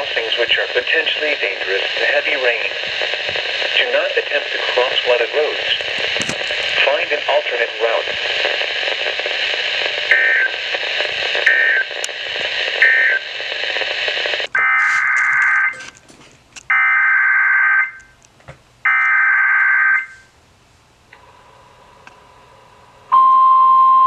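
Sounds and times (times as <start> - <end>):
radio static: 0.0 - 17.0
screechy two-tone data bursts: 10.0 - 10.7, 11.4 - 13.5, 14.1 - 16.0.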